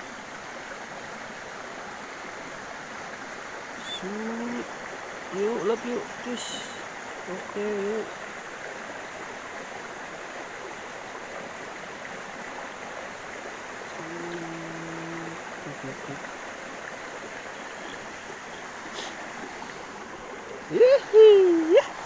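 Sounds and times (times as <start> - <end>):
flowing stream water: 0.0 - 22.0
low steady hum: 13.8 - 22.0.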